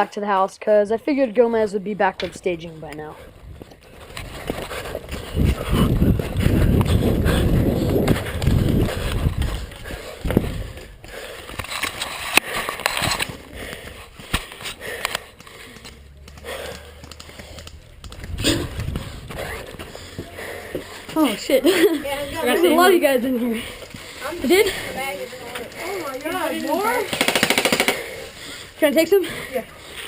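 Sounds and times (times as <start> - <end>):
footsteps: 0.0 - 27.3
rumble on camera microphone: 3.4 - 11.0
sharp snaps: 14.3 - 18.6, 27.1 - 28.1.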